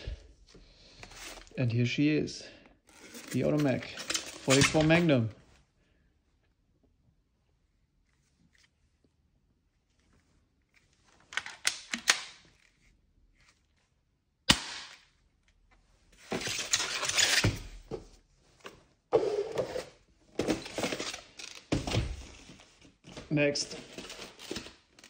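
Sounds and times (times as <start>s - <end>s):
packaging rustling and scraping: 1.0s - 1.6s, 2.9s - 5.1s, 19.2s - 25.0s.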